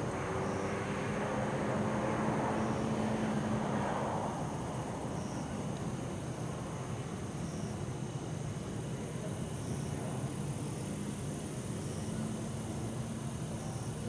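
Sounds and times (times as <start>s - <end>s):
vehicle passing by: 0.0s - 7.0s
crickets chirping: 0.0s - 14.0s.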